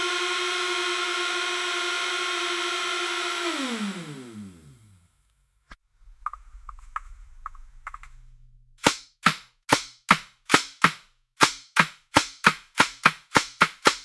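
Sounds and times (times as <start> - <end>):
faint crackling: 5.7 - 8.8
sharp knocks: 8.8 - 14.0.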